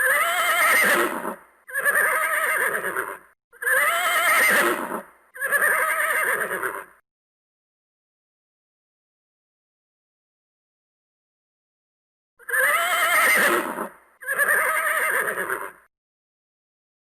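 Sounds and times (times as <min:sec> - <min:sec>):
horse neighing: 0:00.0 - 0:07.0, 0:12.4 - 0:15.9.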